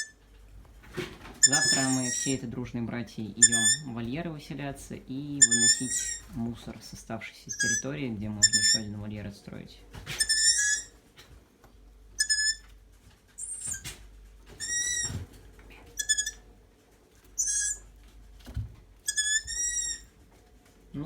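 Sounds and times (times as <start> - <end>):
young owls squeaky begging calls: 1.4 - 2.4, 3.4 - 3.9, 5.4 - 6.3, 7.5 - 8.9, 10.2 - 10.9, 12.2 - 12.6, 13.4 - 13.9, 14.6 - 15.2, 16.0 - 16.4, 17.4 - 17.9, 19.0 - 20.1.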